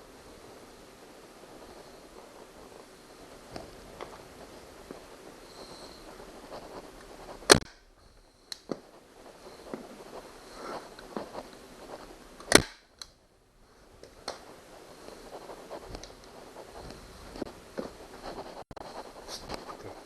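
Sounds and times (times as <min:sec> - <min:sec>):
clicks and handling noise: 0:01.5 - 0:07.9, 0:08.5 - 0:13.2, 0:14.0 - 0:20.0
staple gun snap: 0:12.4 - 0:13.2.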